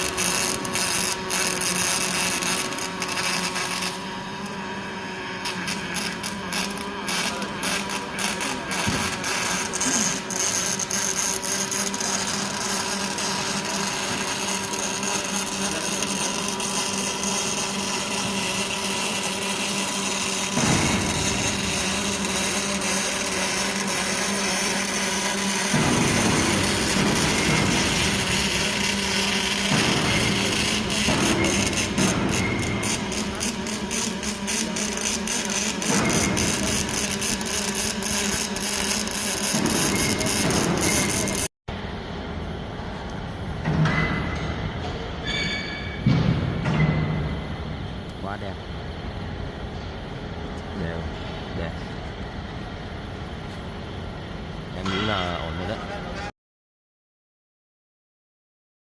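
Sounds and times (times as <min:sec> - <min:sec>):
welding machine hum and hiss: 0:00.0 - 0:56.3.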